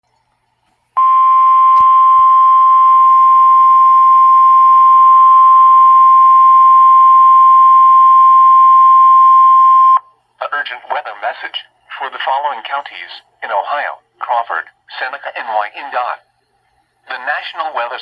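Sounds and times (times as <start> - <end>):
steady alarm beep: 1.0 - 10.0.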